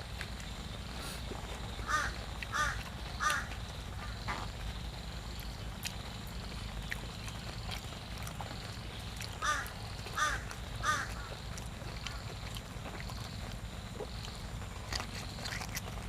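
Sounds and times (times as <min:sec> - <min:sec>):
harsh bird calls: 0:09.4 - 0:11.4.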